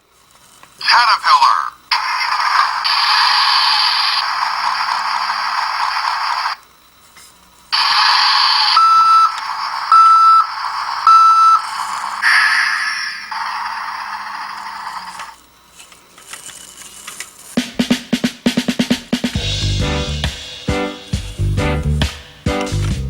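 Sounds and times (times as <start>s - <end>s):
toy engine sound effect: 0.8s - 6.6s, 7.8s - 15.4s
electronic toy beeps: 7.8s - 15.4s.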